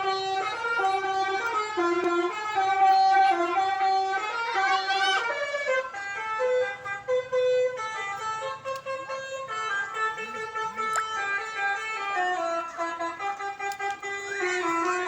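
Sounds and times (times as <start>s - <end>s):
musical bus horn tune: 2.5s - 5.8s.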